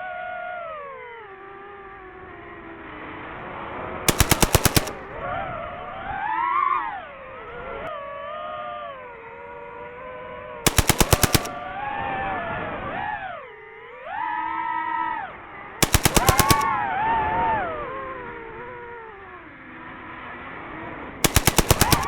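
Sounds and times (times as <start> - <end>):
machine-gun fire: 4.1 - 5.2, 10.7 - 11.7, 15.8 - 16.9, 21.2 - 22.0.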